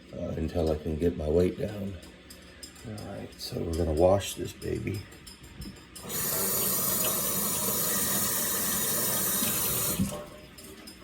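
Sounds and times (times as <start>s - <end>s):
kitchen tap running: 6.0s - 10.7s.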